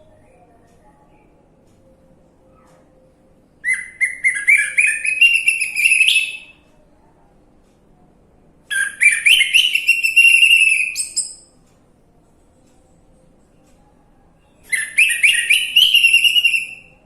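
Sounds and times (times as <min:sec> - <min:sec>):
thrush whistled song: 0:03.6 - 0:06.5, 0:08.7 - 0:11.5, 0:14.7 - 0:16.9.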